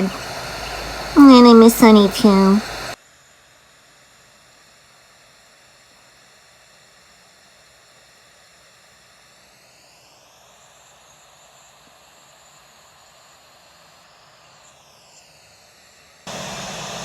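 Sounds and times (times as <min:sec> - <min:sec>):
distant aircraft drone: 0:00.0 - 0:03.0, 0:16.3 - 0:17.0
faint outdoor hiss: 0:00.0 - 0:03.0.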